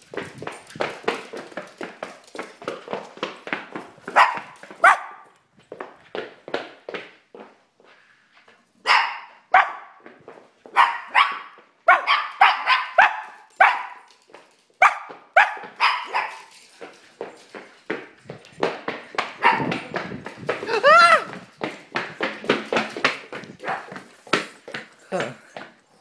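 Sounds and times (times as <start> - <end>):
man imitating dog barks: 20.6 - 21.3.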